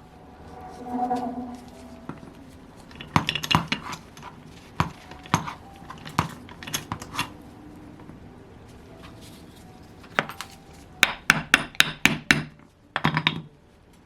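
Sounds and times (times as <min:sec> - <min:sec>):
metal tools clinking on workbench: 0:10.0 - 0:10.8.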